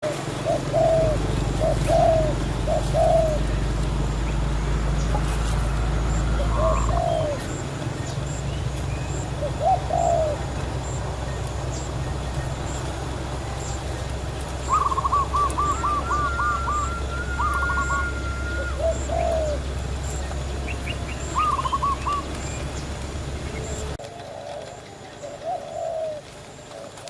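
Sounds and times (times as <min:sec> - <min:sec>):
doves cooing: 0:00.0 - 0:27.0
faint high chirp: 0:14.6 - 0:22.7
long held whistle: 0:14.7 - 0:18.9.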